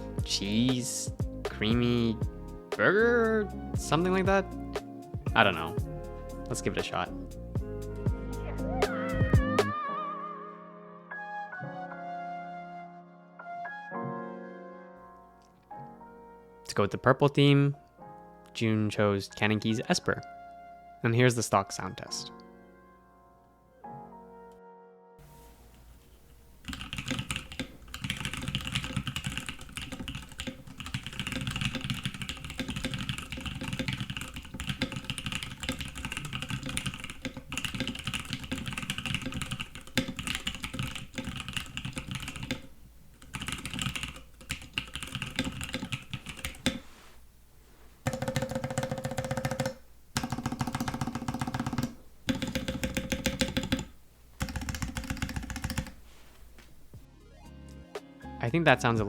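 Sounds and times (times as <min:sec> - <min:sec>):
mechanical keyboard typing: 0:26.6 - 0:46.8, 0:48.0 - 0:56.0.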